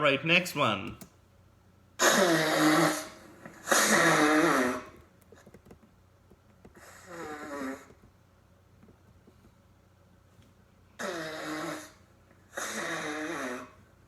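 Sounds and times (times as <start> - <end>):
person blowing nose: 2.0 - 5.0, 11.0 - 13.8.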